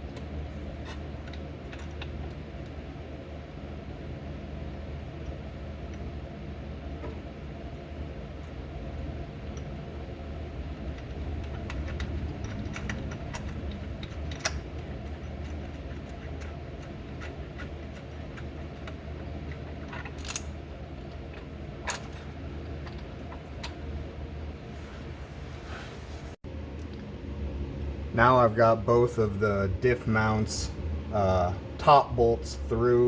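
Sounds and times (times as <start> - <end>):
steady low hum: 0.0 - 33.0
metal clinks of bolts and tools: 11.0 - 19.0, 19.8 - 23.8.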